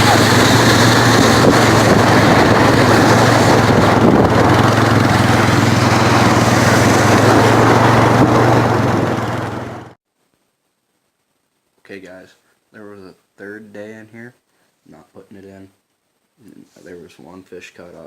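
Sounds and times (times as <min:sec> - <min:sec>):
loud rushing noise: 0:00.0 - 0:10.0
small engine running: 0:00.0 - 0:10.0.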